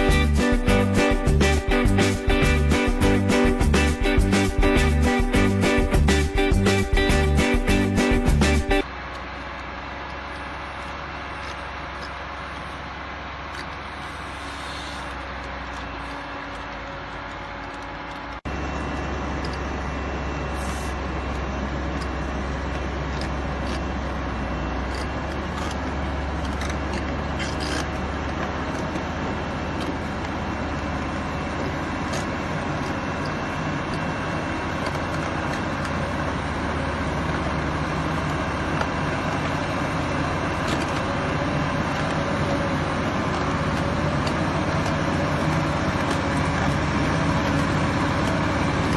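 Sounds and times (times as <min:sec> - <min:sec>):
heavy diesel machinery running: 0:00.0 - 0:48.9.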